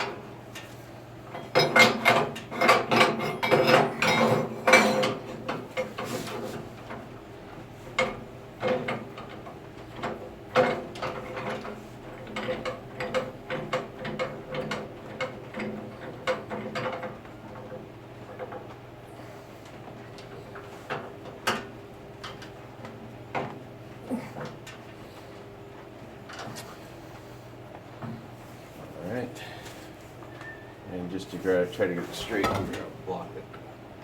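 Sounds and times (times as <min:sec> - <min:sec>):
metal clicks and clanks: 0:01.3 - 0:07.0, 0:26.3 - 0:26.8.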